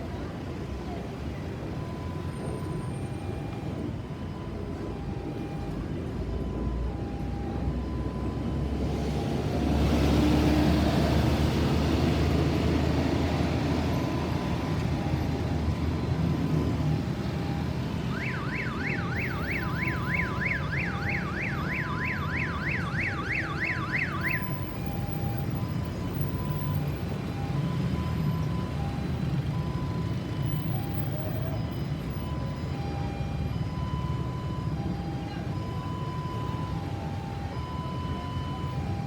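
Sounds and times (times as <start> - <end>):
road traffic noise: 0.0 - 39.0
ambulance siren yelping: 13.4 - 39.0.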